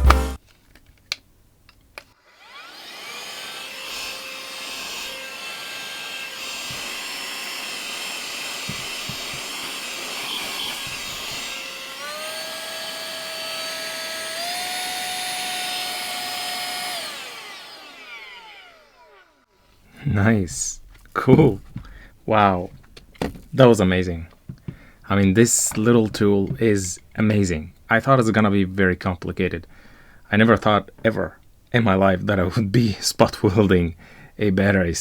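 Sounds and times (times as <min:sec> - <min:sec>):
vacuum cleaner motor whine: 0:02.2 - 0:19.5.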